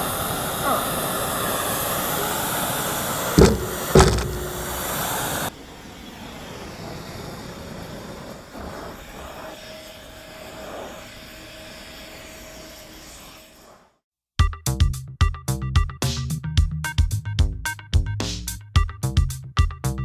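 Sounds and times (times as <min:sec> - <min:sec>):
torch flame hissing: 0:00.0 - 0:05.5, 0:06.3 - 0:14.0.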